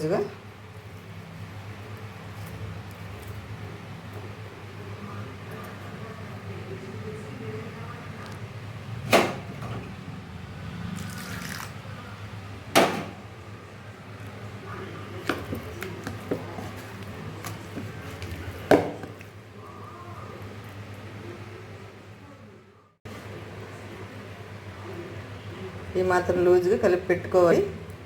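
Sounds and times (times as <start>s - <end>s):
batter mixing in bowl: 15.0s - 19.4s.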